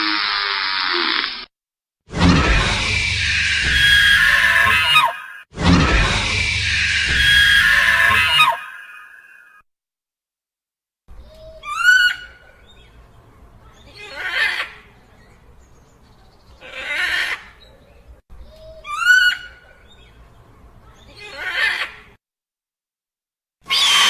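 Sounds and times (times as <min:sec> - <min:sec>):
breathy hissing dinosaur calls: 0:00.0 - 0:01.5, 0:02.7 - 0:05.1, 0:06.1 - 0:08.6
shrieking dinosaur cry: 0:02.3 - 0:09.6, 0:23.7 - 0:24.0.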